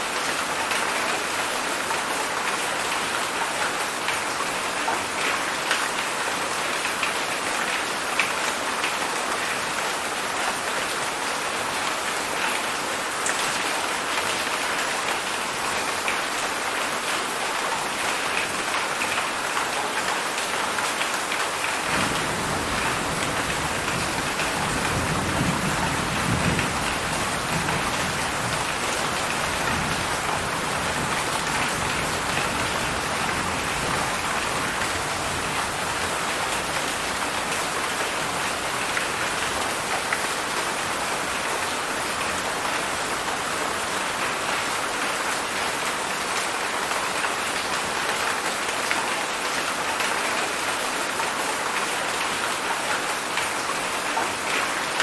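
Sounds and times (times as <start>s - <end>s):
heavy rain: 0.0s - 55.0s
thunder rumbling: 21.9s - 36.2s.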